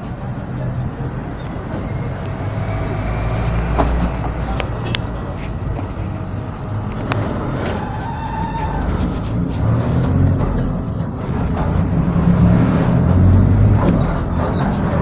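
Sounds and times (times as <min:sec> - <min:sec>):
bus engine drone: 0:00.0 - 0:15.0
clicks and rattles from bus body: 0:08.9 - 0:12.1, 0:13.5 - 0:15.0.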